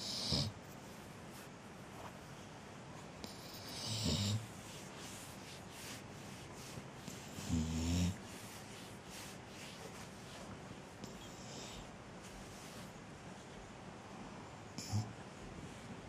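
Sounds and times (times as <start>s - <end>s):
pet snoring: 0.0s - 0.6s, 3.2s - 4.4s, 7.2s - 8.2s, 14.8s - 15.2s.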